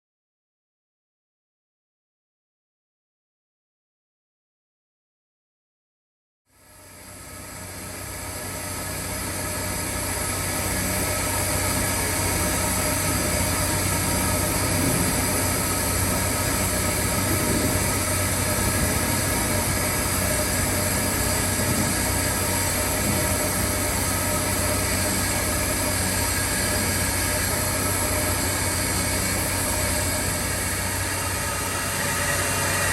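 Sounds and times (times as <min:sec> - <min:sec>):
steam boiler mechanical roar: 0:06.5 - 0:32.9
constant whining tones: 0:06.7 - 0:32.9.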